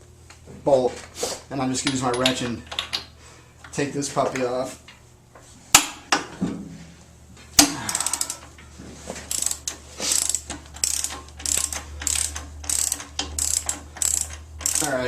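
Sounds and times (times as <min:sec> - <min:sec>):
ratchet wrench clicking: 0:07.9 - 0:08.4, 0:09.3 - 0:15.0.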